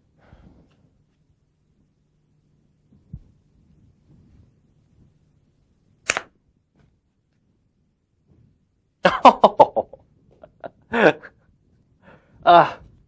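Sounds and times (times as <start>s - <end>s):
person laughing: 9.0s - 11.4s.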